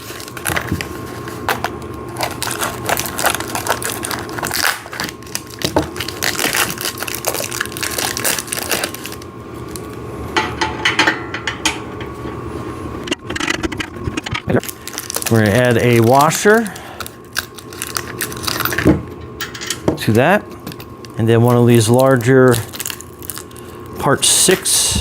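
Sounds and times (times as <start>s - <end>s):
metal parts clicking and scraping: 18.4s - 19.9s.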